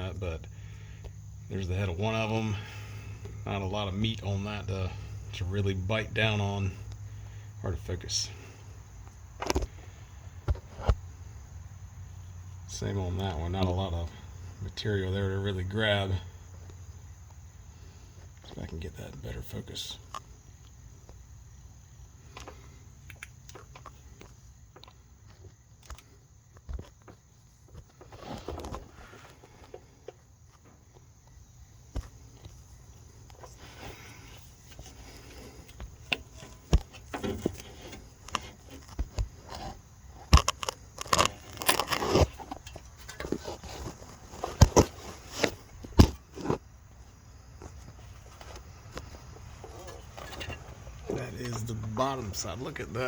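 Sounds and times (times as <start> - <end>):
clicks scrapes and rustles: 22.3 - 30.6, 31.9 - 46.6.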